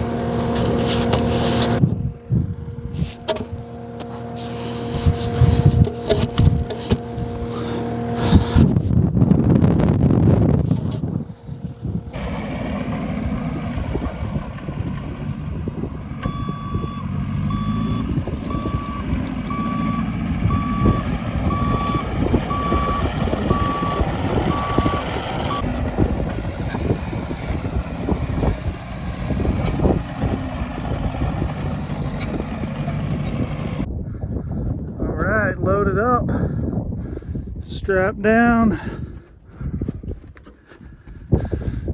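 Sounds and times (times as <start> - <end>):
diesel engine running: 0.0 - 34.6, 38.8 - 41.9
backup alarm beeping: 16.2 - 25.7.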